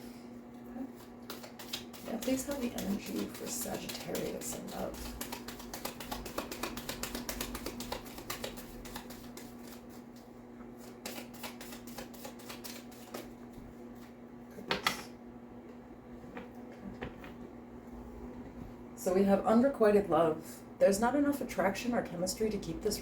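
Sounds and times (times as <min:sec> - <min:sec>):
cards being shuffled: 0:01.3 - 0:13.3.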